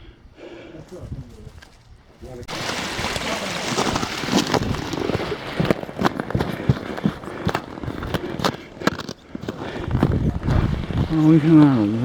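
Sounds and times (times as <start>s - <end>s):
footsteps crunching on ice: 2.5s - 11.7s.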